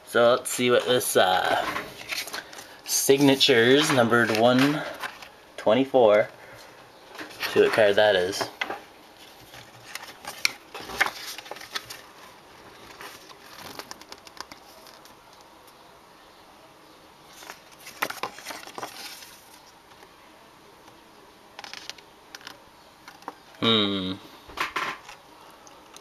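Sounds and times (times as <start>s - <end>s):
trading cards and paper rustling: 0.6s - 15.6s, 17.3s - 20.1s, 21.5s - 23.6s.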